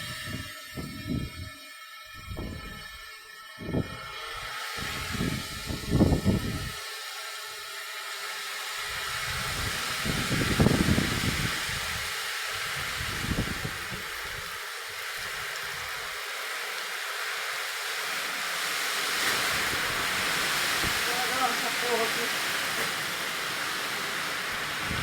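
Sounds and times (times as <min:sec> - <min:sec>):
wind gusts rumbling on microphone: 0:00.0 - 0:06.8, 0:08.8 - 0:16.1, 0:19.3 - 0:25.0
heavy rain hissing: 0:00.0 - 0:25.0.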